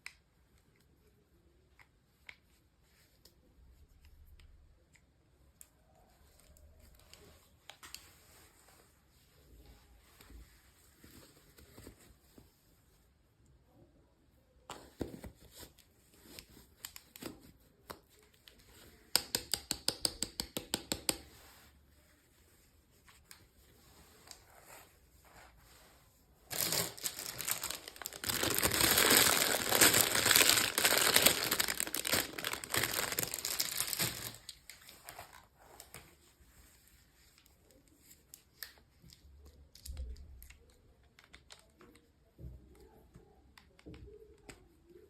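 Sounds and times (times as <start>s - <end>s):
loud crinkling: 26.5s - 34.6s
packaging being torn open: 26.5s - 34.7s.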